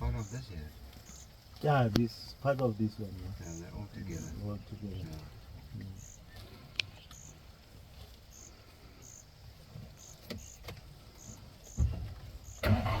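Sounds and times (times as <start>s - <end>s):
insect chirping in high notes: 0.0s - 1.4s, 7.1s - 7.4s, 8.3s - 13.0s
quiet bush background: 0.0s - 13.0s.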